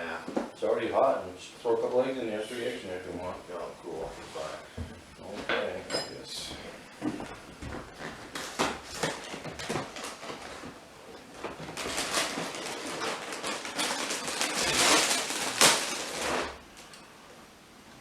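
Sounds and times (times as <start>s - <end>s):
rustling noise: 7.1s - 16.9s.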